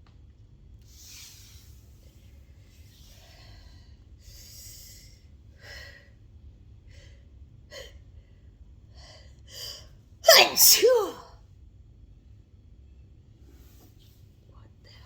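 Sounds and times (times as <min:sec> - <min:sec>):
person gasping: 0:10.3 - 0:11.2.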